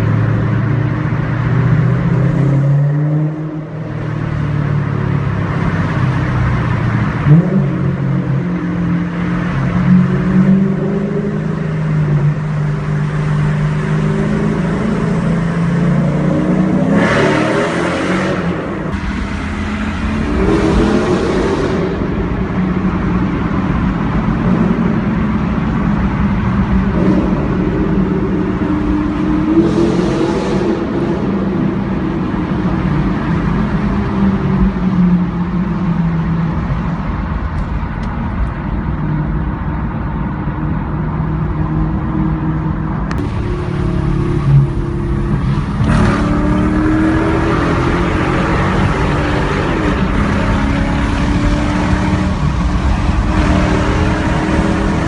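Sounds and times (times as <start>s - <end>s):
car engine revving loudly: 7.2s - 23.0s, 26.9s - 31.7s, 43.1s - 55.0s.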